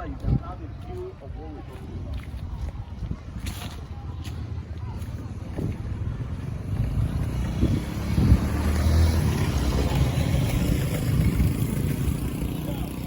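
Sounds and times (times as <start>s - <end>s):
vehicle passing with road hiss: 6.0s - 13.0s.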